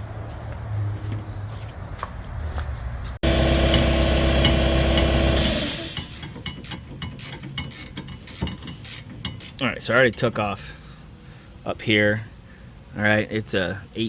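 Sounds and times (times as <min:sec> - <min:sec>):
impact wrench running: 0:03.2 - 0:10.1
metallic clicks of hand tools: 0:03.8 - 0:10.3.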